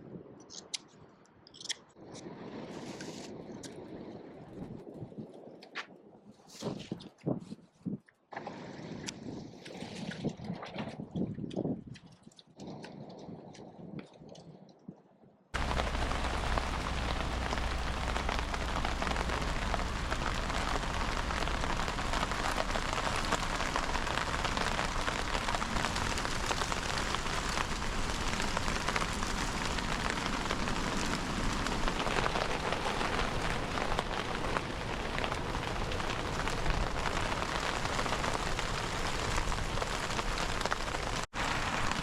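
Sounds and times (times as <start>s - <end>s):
steady rain hiss: 15.6s - 42.0s.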